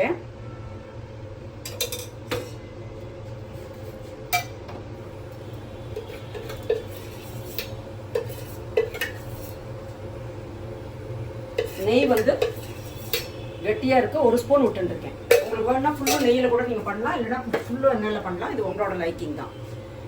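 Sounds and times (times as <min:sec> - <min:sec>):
steady low hum: 0:00.0 - 0:20.0
metal spoon clinking on pans: 0:01.6 - 0:02.6, 0:04.3 - 0:04.6, 0:05.9 - 0:09.6, 0:11.6 - 0:13.5, 0:15.3 - 0:16.6.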